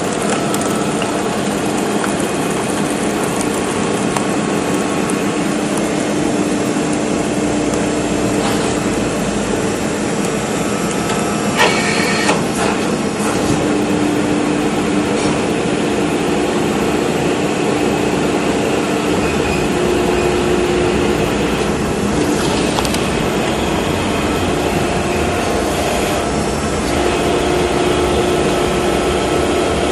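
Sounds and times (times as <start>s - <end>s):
baling machine humming: 0.0s - 29.9s
metallic screech and clank: 11.6s - 12.4s.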